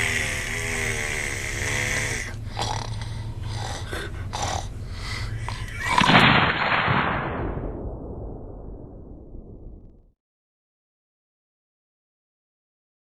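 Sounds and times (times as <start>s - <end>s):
man snoring: 0.0s - 6.1s.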